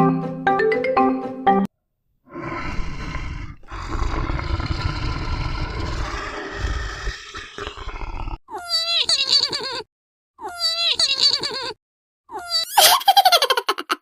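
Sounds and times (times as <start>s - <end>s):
large animal growling: 2.3s - 8.4s.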